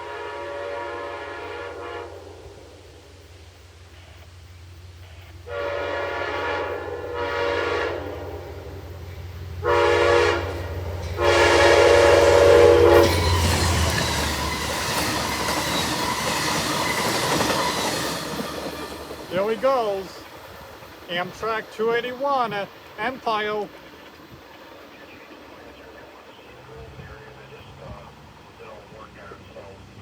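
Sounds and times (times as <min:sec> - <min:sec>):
train air horn blasts: 0:00.0 - 0:02.8, 0:05.4 - 0:08.8, 0:09.6 - 0:20.0
diesel locomotive engine running: 0:00.0 - 0:30.0
train wheels on rails rushing: 0:00.0 - 0:30.0.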